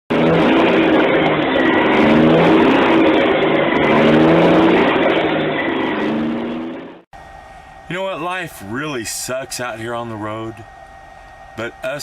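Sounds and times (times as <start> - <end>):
vehicle engine revving: 0.1 - 7.1
road noise: 0.1 - 12.0.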